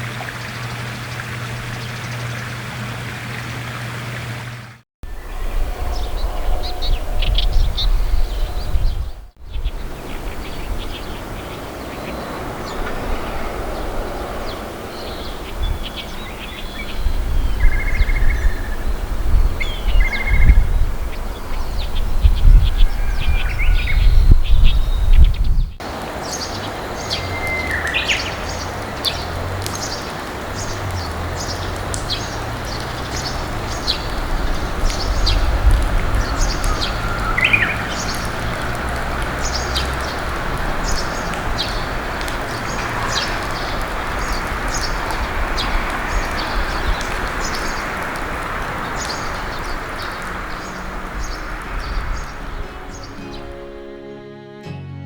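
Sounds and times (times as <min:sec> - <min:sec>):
wind rumble on microphone: 0:00.0 - 0:53.8.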